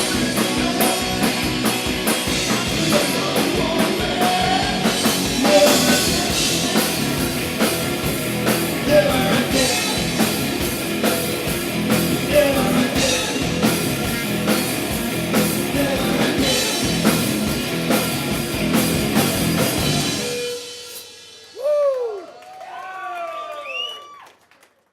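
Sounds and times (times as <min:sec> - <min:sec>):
drum kit hitting: 0:00.0 - 0:21.6
rock band playing live: 0:00.0 - 0:21.6.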